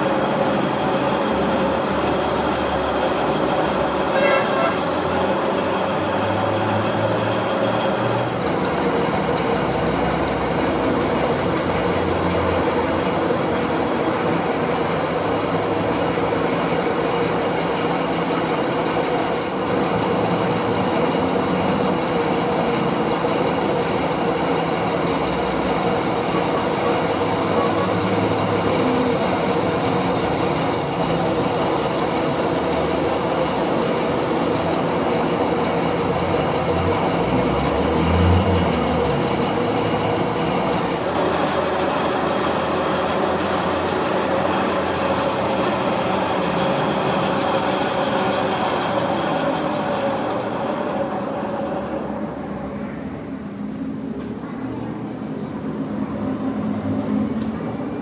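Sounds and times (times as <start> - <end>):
metal lathe machining: 0.0 - 54.1.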